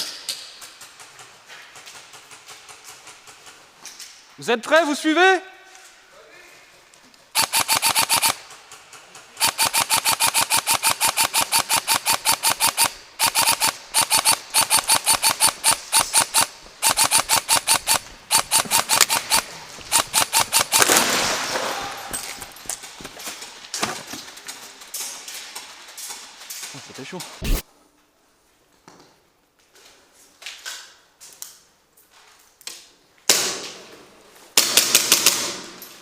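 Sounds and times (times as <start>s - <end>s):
airsoft gun firing: 7.4s - 8.4s, 9.4s - 22.8s, 27.4s - 27.6s.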